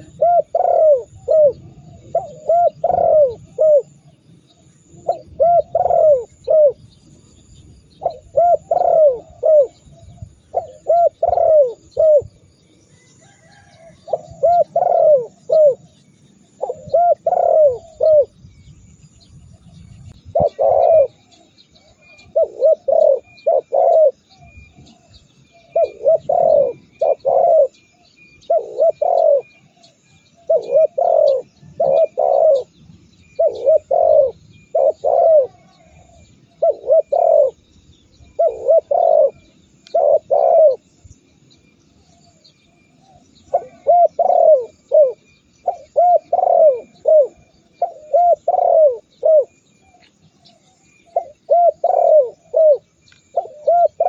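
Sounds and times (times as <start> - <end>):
dove cooing: 0.0 - 18.4, 19.6 - 37.6, 38.2 - 40.9, 42.0 - 54.0
small birds chirping: 0.0 - 54.0.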